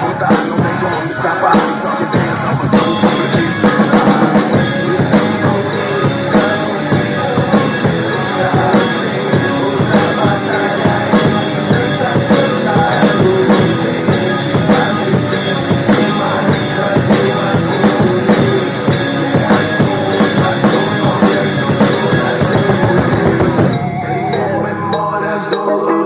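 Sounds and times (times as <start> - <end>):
drum kit beat: 0.0 - 25.8
recorded rock music: 0.0 - 26.0.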